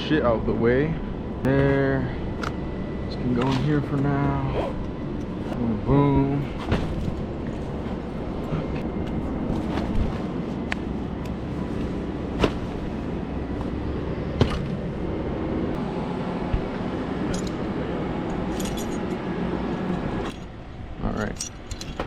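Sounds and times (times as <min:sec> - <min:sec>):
sharp metallic clinks and knocks: 0:17.3 - 0:17.7, 0:18.3 - 0:19.3, 0:21.3 - 0:22.0.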